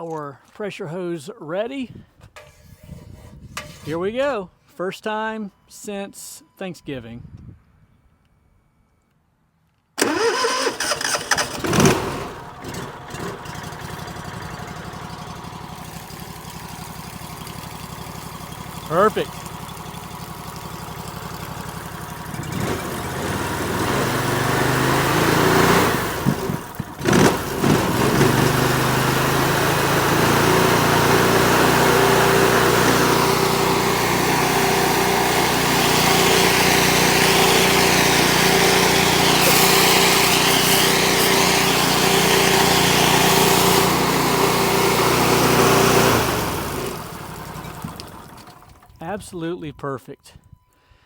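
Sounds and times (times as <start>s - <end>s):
pressure washer engine running: 10.0s - 48.8s.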